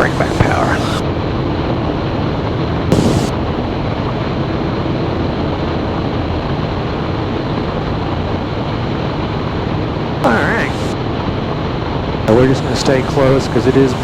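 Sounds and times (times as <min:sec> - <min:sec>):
aircraft engine running: 0:00.0 - 0:14.0
wind rush: 0:02.7 - 0:04.4.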